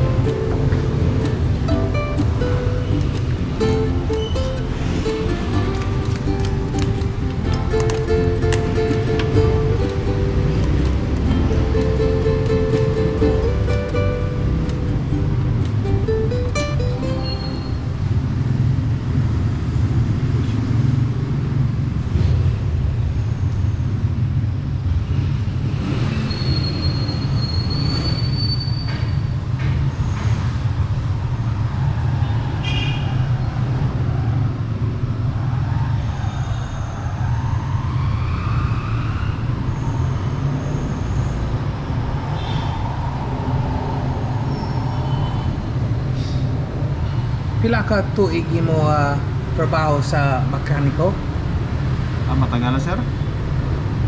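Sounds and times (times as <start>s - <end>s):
low rumble of vehicle engines: 0.0s - 54.0s.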